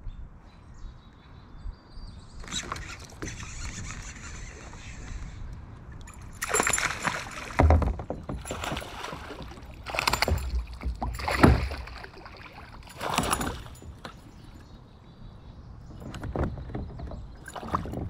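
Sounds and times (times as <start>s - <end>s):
paddle water swishing and splashing: 2.5s - 14.6s
dull thumps: 7.1s - 12.2s.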